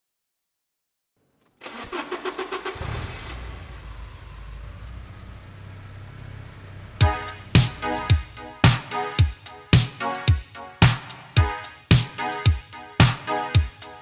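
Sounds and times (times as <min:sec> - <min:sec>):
car engine starting and idling: 0:01.2 - 0:09.1
music with sharp drum beats: 0:07.0 - 0:14.0.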